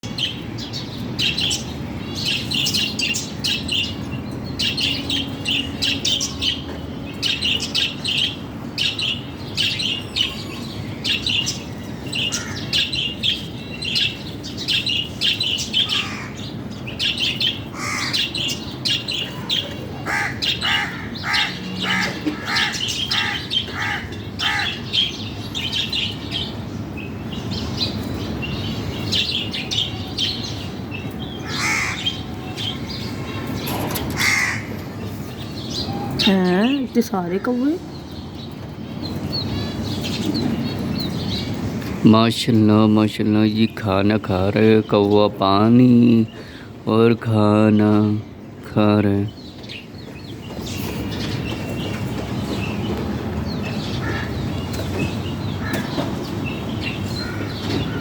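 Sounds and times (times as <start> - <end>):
birds chirping: 0.0 - 58.0
crow cawing: 12.3 - 12.8, 15.8 - 16.5, 17.7 - 18.5, 19.3 - 25.1, 31.4 - 32.3, 34.2 - 34.7, 54.0 - 54.4, 55.6 - 56.0, 57.2 - 58.0.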